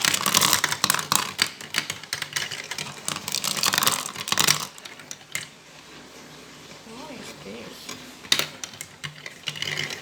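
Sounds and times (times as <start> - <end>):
marbles clattering through plastic run: 0.0 - 5.6, 7.9 - 10.0.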